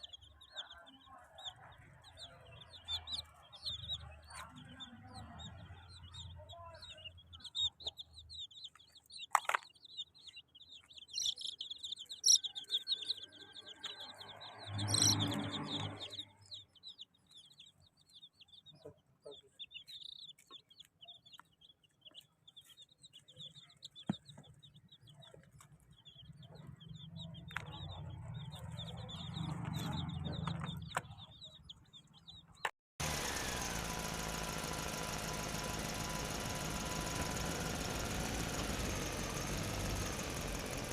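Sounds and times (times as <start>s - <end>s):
baby chicks cheeping: 0.0s - 40.9s
steady mechanical hum: 33.0s - 40.9s.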